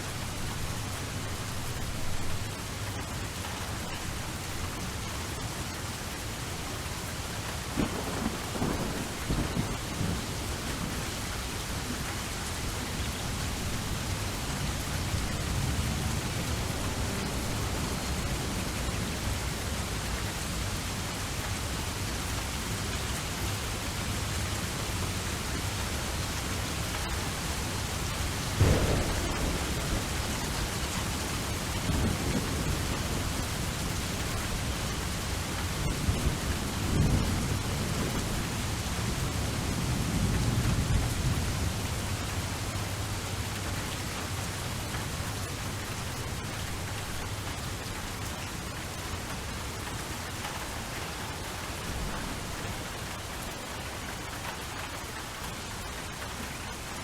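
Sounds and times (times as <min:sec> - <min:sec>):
steady rain: 0:00.0 - 0:57.0
thunder rumbling: 0:07.8 - 0:12.0, 0:26.8 - 0:47.4
loud thunder clap: 0:28.6 - 0:33.3.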